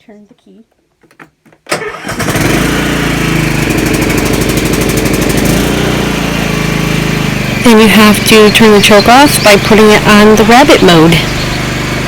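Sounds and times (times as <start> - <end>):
lawn mower engine starting: 1.7 - 12.0.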